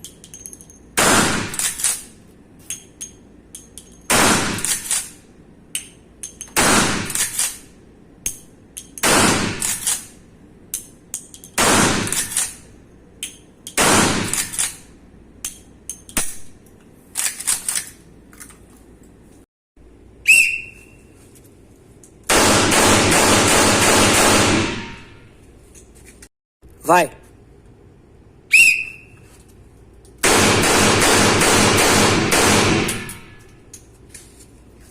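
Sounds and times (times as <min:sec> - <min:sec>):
gunshots: 0:01.0 - 0:01.7, 0:04.1 - 0:04.9, 0:06.6 - 0:07.3, 0:09.0 - 0:09.8, 0:11.6 - 0:12.4, 0:13.8 - 0:14.6, 0:22.3 - 0:25.2, 0:30.2 - 0:33.3
gun handling clicks: 0:17.2 - 0:18.6.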